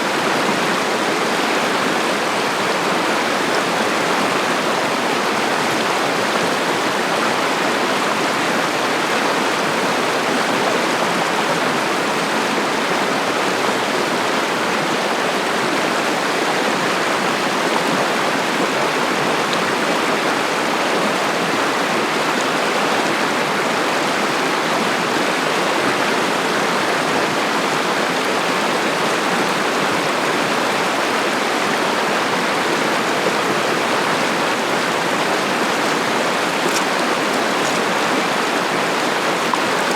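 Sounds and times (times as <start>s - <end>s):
water rushing over rocks: 23.8s - 39.9s.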